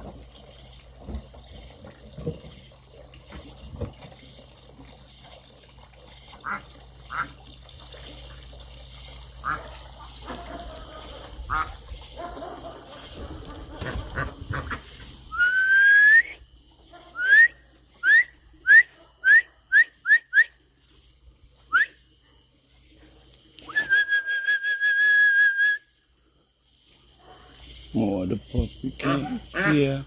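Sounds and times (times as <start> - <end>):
person whistling: 15.3 - 16.4, 17.2 - 20.5, 21.7 - 22.0, 23.7 - 25.9.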